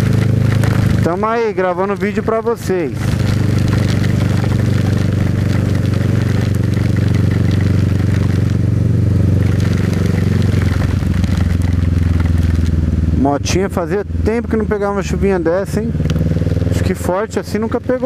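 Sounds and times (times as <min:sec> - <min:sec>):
motorcycle engine running: 0:00.0 - 0:18.0
heavy rain: 0:02.9 - 0:12.8.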